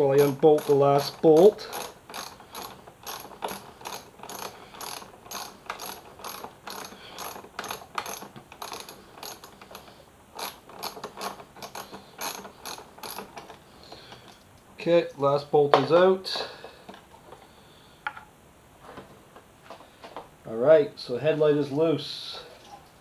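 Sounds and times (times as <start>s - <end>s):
ratchet wrench clicking: 0.2s - 9.8s, 10.4s - 13.5s.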